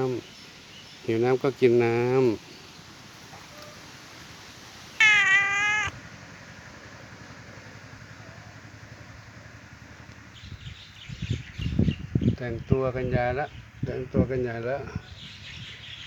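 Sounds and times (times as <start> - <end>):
cat meowing: 5.0 - 6.0.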